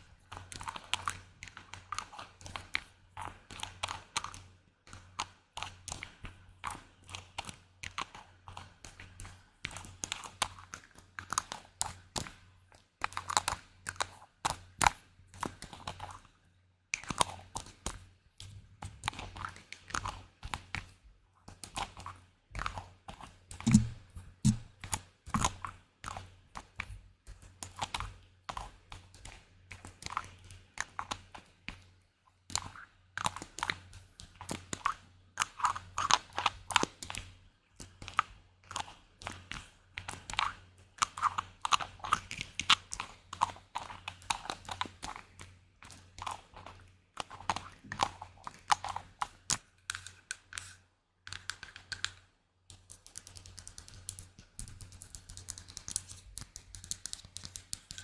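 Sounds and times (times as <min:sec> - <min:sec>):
taps and clicks on hard objects: 0:23.5 - 0:26.2.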